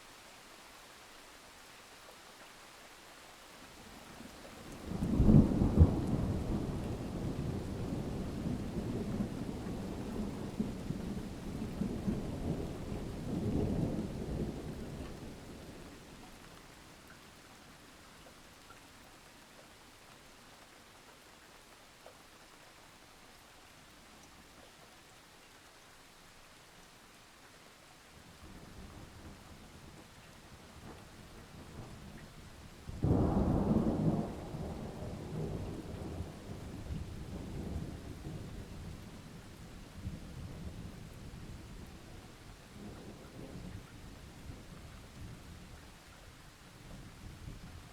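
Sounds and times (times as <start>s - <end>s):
faint steady rain: 0.0s - 47.9s
rain drop ticks: 4.2s - 10.9s, 16.0s - 17.4s, 18.0s - 22.6s, 28.9s - 32.4s.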